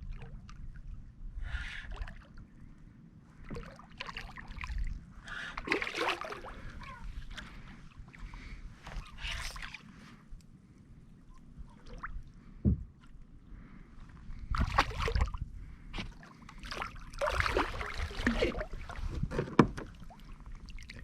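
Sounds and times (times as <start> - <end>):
water splashing against kayak: 3.5 - 10.0, 14.4 - 15.4, 16.0 - 21.0
knocks on hull: 12.6 - 12.9, 19.2 - 20.0.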